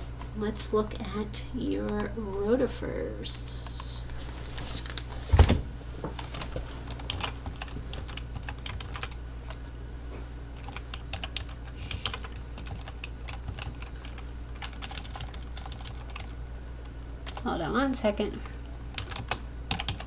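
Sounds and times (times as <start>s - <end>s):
low electrical hum: 0.0s - 20.0s
computer keyboard typing: 6.2s - 9.2s, 10.6s - 16.4s, 17.2s - 17.4s, 18.9s - 20.0s.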